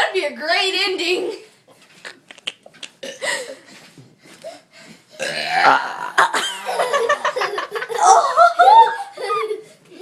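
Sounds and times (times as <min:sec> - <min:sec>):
girl burping: 0:03.0 - 0:03.5, 0:05.2 - 0:06.4.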